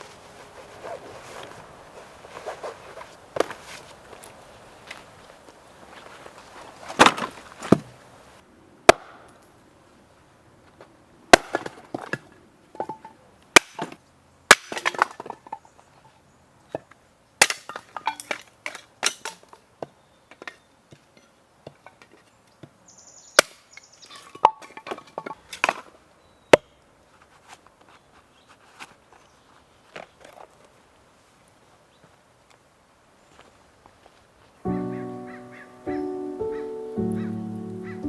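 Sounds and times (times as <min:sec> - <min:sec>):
sharp wooden chops and knocks: 0:08.9 - 0:09.3, 0:11.4 - 0:11.8, 0:13.6 - 0:15.0.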